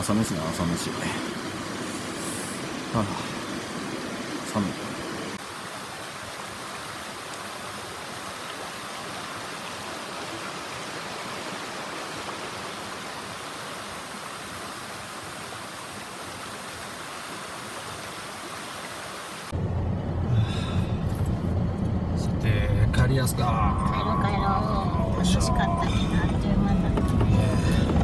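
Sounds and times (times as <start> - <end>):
mountain stream rushing: 0.0 - 19.6, 23.0 - 28.0.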